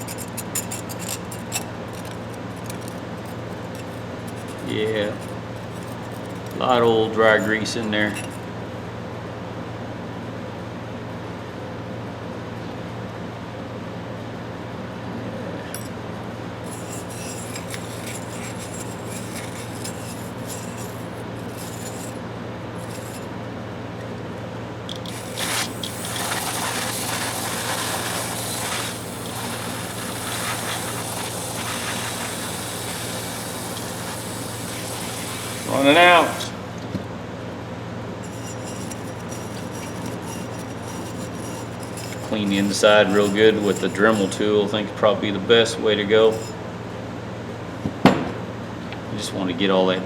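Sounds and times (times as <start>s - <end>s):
hand scraping ratchet head: 0.0s - 8.5s, 16.6s - 23.3s, 24.9s - 36.7s, 38.2s - 44.6s, 46.1s - 46.6s.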